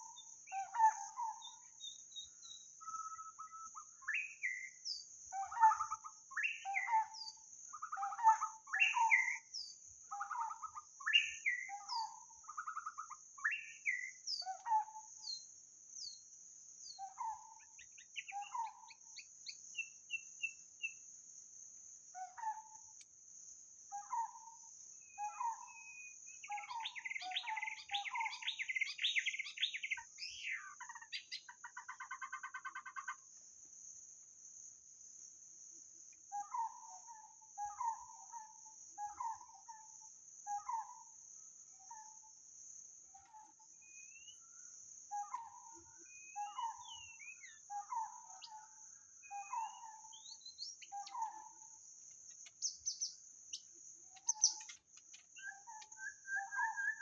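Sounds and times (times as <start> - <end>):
bird singing whistled phrases: 25.2 - 30.7, 43.9 - 44.4, 55.4 - 57.0.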